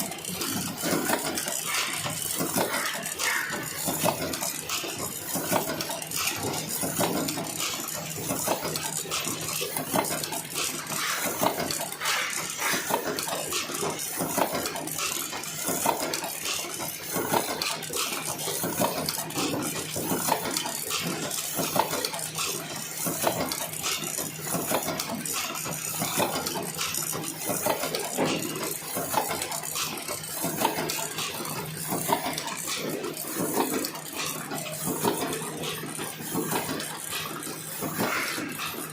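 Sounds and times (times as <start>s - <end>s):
machine clattering: 0.0s - 38.9s.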